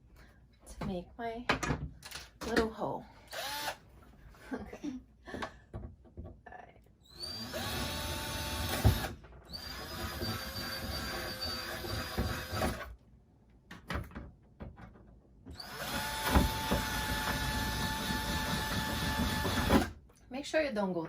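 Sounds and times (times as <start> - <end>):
power drill whining: 3.3 - 3.8, 7.0 - 12.9, 15.5 - 20.0.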